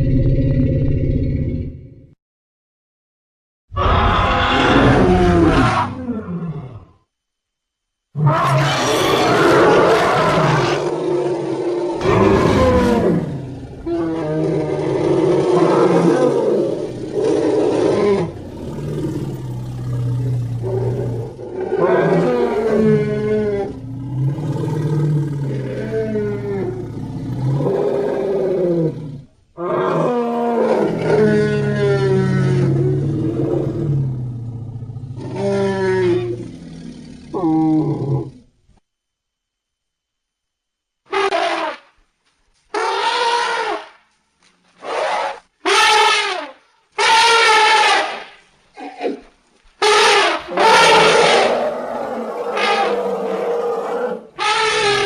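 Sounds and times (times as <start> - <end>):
animal roaring: 3.7 - 7.0, 8.2 - 38.5, 49.8 - 55.0.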